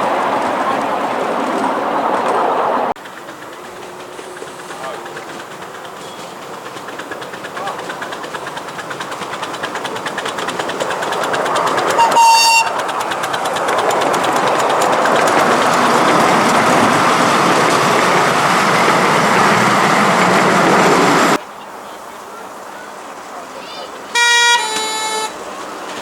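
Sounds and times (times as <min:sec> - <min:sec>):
wheels ticking over rail joints: 0:00.0 - 0:21.4
miniature locomotive toot: 0:11.6 - 0:13.4, 0:24.1 - 0:26.0.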